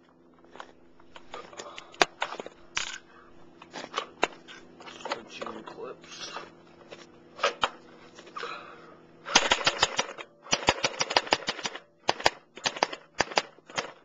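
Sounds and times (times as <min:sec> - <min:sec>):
airsoft rifle automatic bursts: 0:09.3 - 0:14.0.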